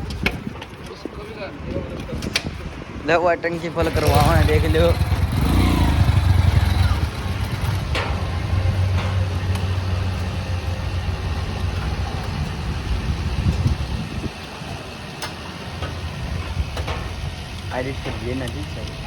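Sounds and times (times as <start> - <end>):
small engine idling: 3.8 - 19.0.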